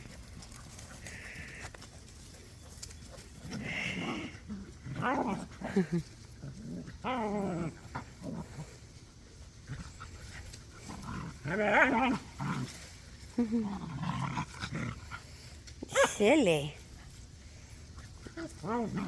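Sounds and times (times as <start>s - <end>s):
dogs growling while play-fighting: 3.1s - 15.7s, 17.9s - 19.0s.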